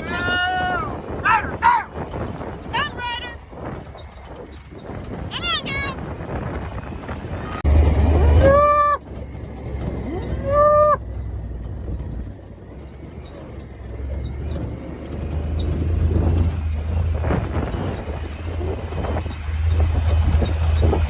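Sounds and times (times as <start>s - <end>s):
cattle bawling: 0.0s - 2.0s
low engine rumble: 0.0s - 21.0s.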